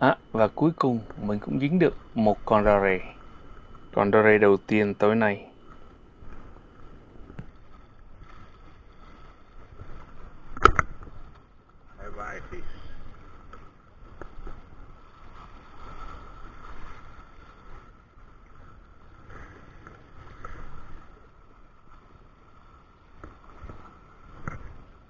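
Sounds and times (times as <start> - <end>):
faint steady high tone: 0.0 - 7.5.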